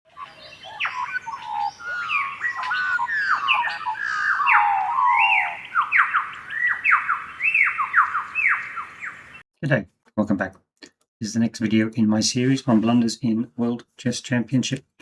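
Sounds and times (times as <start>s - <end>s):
birds squawking and chirping: 0.1s - 9.4s.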